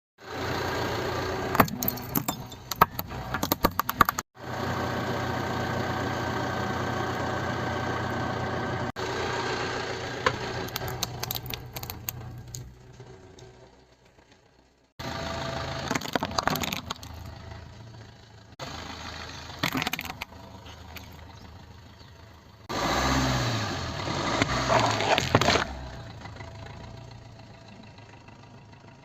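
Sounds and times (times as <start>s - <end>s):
car engine running: 0.3s - 29.0s
objects crackling under tyres: 1.5s - 4.3s, 10.2s - 14.9s, 15.6s - 18.4s, 19.2s - 22.2s, 24.1s - 27.0s.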